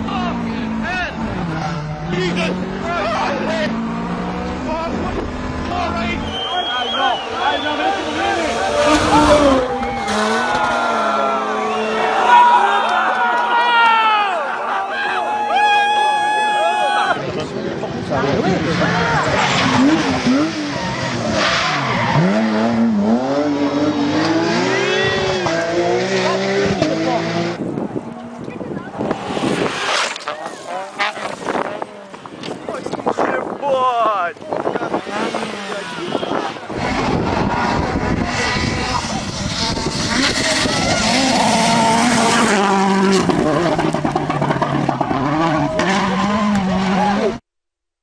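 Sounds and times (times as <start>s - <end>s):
rally car engine revving: 0.0s - 12.7s, 17.2s - 33.6s, 34.4s - 47.4s
rally car engine running hard: 34.7s - 47.4s.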